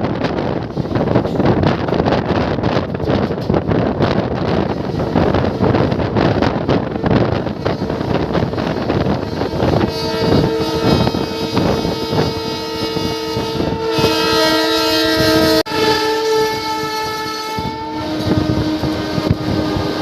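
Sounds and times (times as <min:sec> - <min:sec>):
train wheels rattling on rail: 0:00.0 - 0:20.0
locomotive horn blast: 0:05.0 - 0:20.0.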